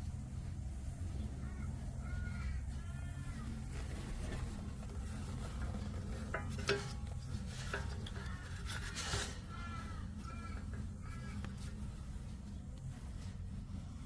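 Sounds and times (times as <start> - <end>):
tools scraping metal parts: 5.5 - 11.5.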